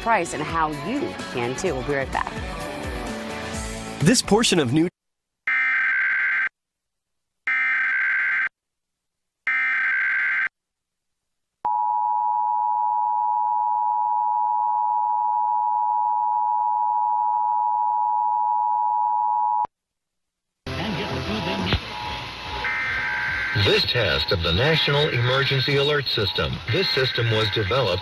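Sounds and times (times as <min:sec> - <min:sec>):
modem-like data tones: 0:21.0 - 0:28.0.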